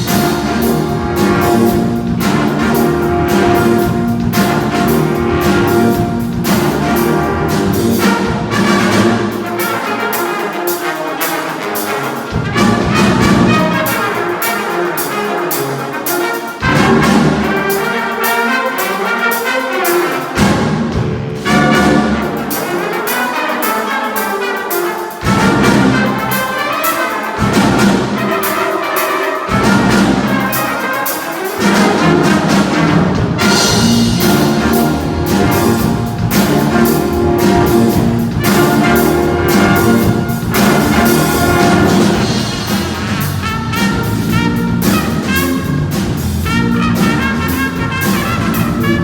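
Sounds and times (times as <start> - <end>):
bass: 0.0 - 9.7, 12.3 - 14.0, 16.6 - 17.9, 20.4 - 22.6, 25.2 - 26.6, 27.4 - 28.6, 29.5 - 30.8, 31.6 - 49.0
drum kit groove: 0.0 - 49.0
horn section playing: 0.0 - 49.0.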